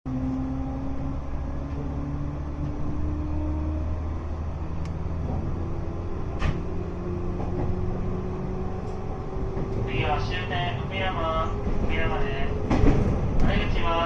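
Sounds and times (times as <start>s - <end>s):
electric train rumble and hum: 0.1s - 14.0s.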